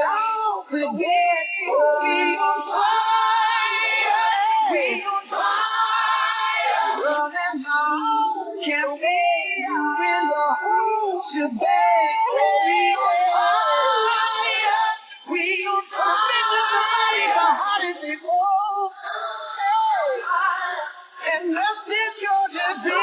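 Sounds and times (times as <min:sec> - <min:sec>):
high-pitched singing voice: 0:00.0 - 0:23.0.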